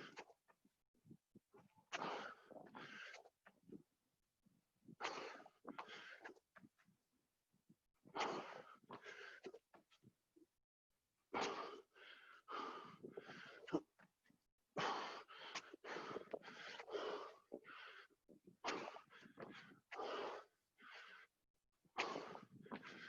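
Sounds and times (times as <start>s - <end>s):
person panting hard: 2.0s - 3.3s, 5.0s - 6.4s, 8.2s - 9.6s, 11.4s - 13.9s, 14.8s - 21.3s, 22.0s - 23.0s.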